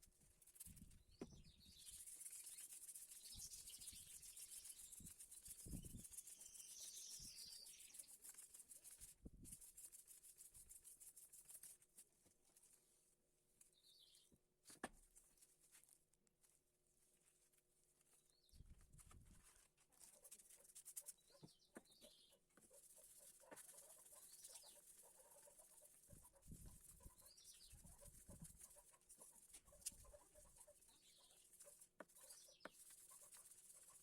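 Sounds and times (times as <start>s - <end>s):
faint bird chirps: 0.5s - 8.9s, 13.7s - 14.4s, 20.0s - 34.0s.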